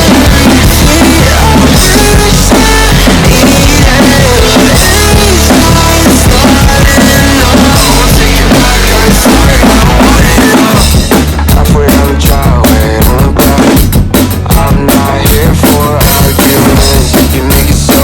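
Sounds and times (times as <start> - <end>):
sliding melody line: 0.0 - 11.1
drum kit playing: 0.0 - 18.0
rock music recording: 0.0 - 18.0.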